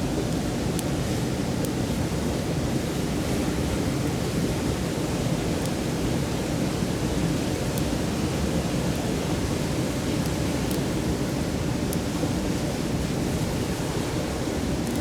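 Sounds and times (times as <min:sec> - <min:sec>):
campfire snaps: 0:04.8 - 0:15.0
stream rushing: 0:13.0 - 0:15.0.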